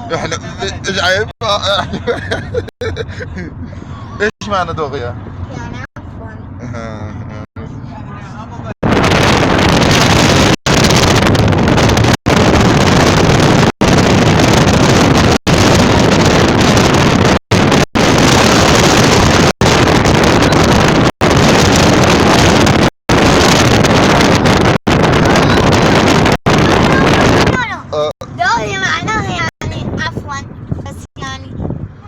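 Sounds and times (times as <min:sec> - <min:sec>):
wind rushing on microphone: 0:08.5 - 0:32.0.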